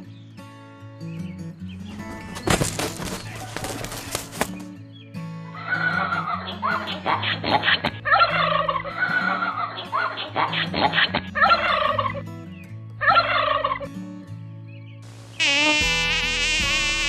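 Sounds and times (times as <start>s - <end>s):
turkey gobbling: 5.6s - 12.2s, 13.0s - 13.9s.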